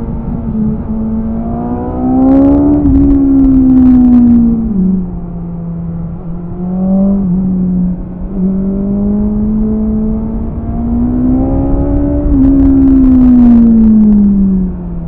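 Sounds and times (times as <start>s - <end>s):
motorcycle engine revving: 0.0s - 14.4s.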